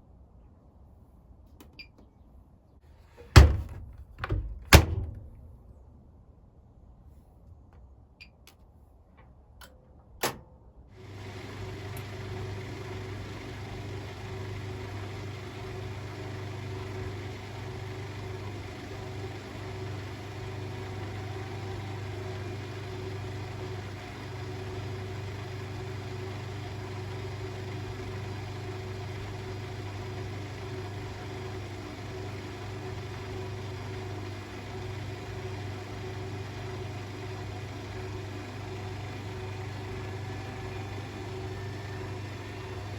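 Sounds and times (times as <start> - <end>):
washing machine low hum: 11.0 - 42.9.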